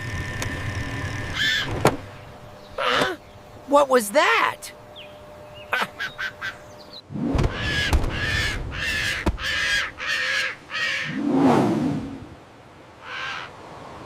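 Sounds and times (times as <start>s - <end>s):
seagull calls: 1.3s - 1.8s, 2.7s - 3.2s, 5.5s - 11.2s, 13.0s - 13.5s.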